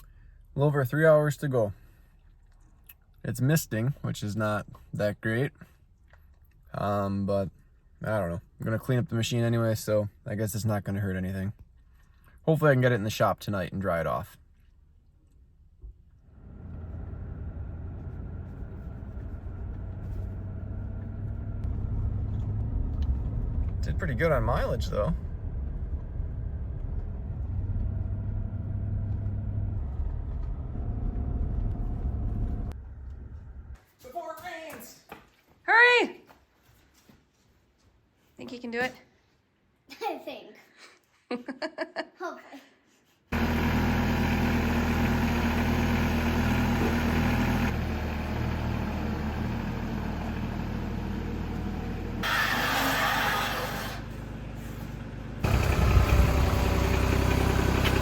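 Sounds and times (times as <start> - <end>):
vehicle road rumble: 13.8 - 33.9, 43.3 - 58.0
engine idling: 16.2 - 33.7, 43.4 - 58.0.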